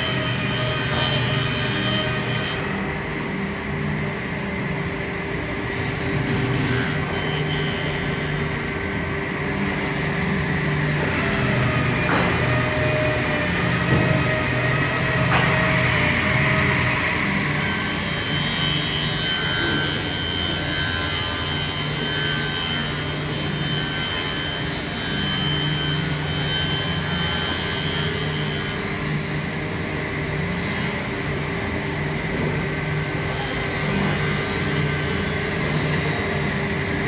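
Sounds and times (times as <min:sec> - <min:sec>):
power tool cutting wood: 0:00.0 - 0:02.8, 0:10.7 - 0:29.1.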